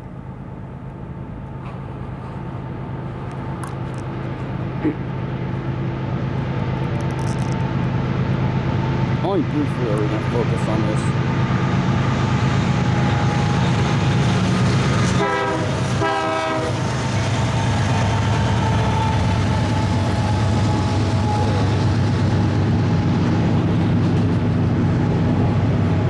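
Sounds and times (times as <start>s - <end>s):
diesel locomotive engine drone: 0.0s - 26.0s
train wheels on rails: 1.3s - 26.0s
train horn blasts: 15.0s - 21.8s.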